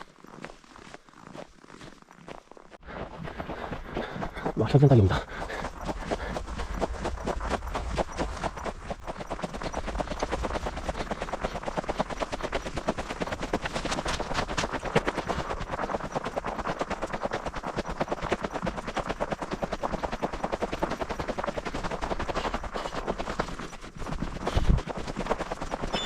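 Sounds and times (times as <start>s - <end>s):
footsteps crunching on snow: 0.0s - 15.6s.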